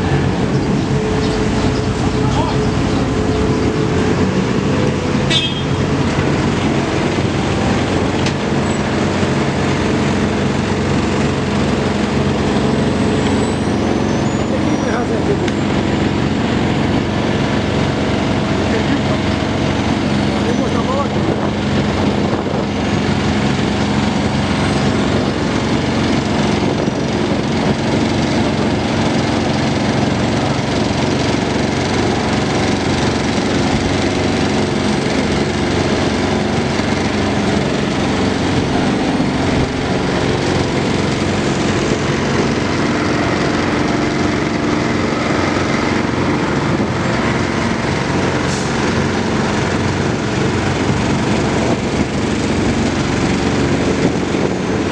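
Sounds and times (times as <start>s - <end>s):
machinery engine running: 0.0s - 54.9s.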